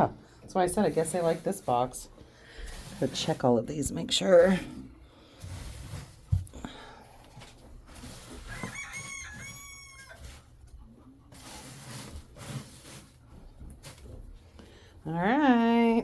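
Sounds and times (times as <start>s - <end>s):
chicken calling: 8.5s - 10.2s.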